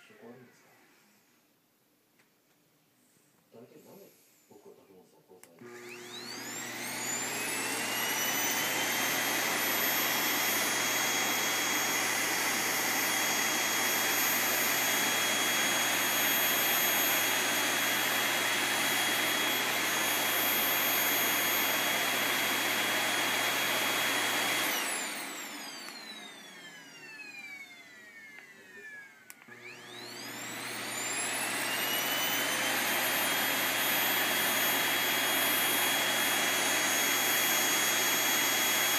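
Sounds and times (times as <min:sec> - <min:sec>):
vacuum cleaner motor whine: 0:05.6 - 0:38.9.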